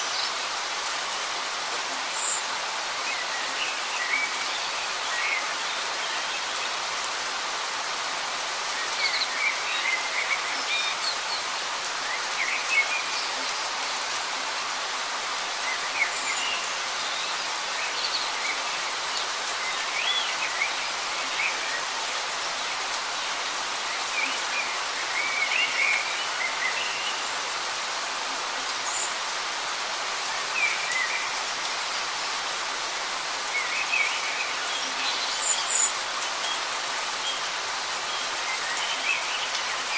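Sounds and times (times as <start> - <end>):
light rain falling: 0.0 - 39.9.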